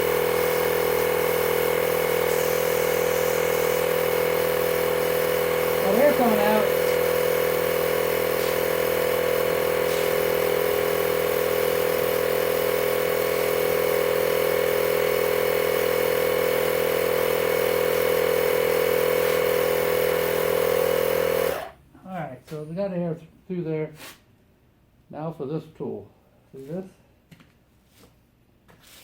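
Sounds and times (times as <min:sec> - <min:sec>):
tyre inflator motor humming: 0:00.0 - 0:21.8.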